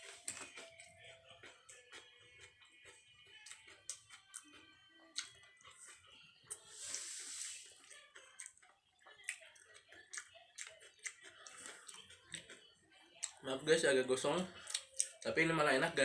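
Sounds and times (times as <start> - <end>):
chewing crispy food: 0.0 - 13.7, 14.4 - 15.4
short hiss: 6.7 - 7.7.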